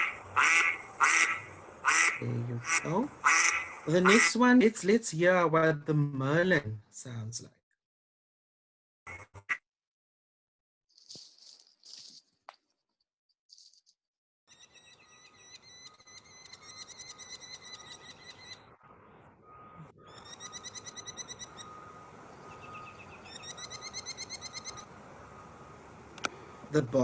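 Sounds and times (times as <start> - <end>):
merlin calling shrill notes: 19.4 - 25.8.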